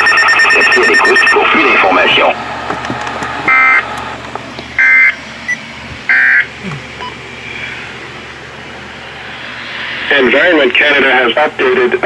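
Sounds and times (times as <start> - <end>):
raspy digital chirps: 0.0 - 1.5
radio hiss: 0.0 - 2.5, 9.0 - 12.0.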